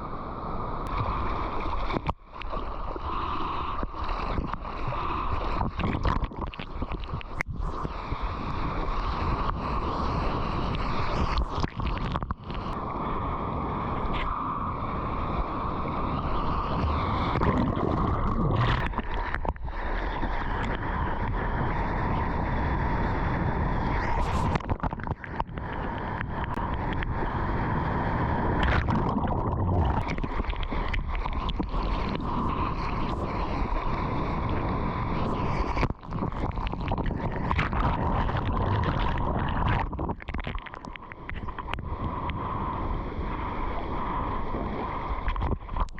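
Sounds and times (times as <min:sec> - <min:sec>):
ocean surf and rushing water: 0:00.0 - 0:45.9
wind buffeting microphone: 0:07.4 - 0:40.6.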